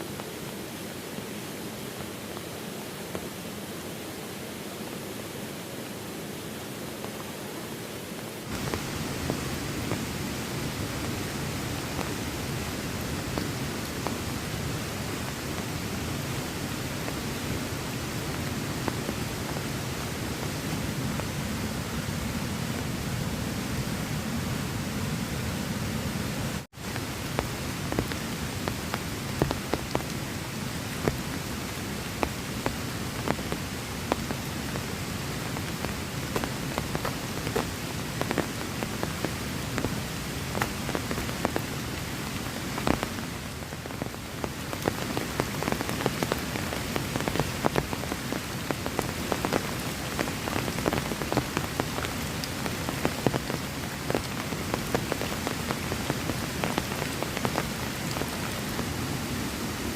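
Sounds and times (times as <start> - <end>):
heavy rain falling: 0.0 - 59.9
raindrops ticking close by: 8.4 - 22.0, 26.8 - 59.0.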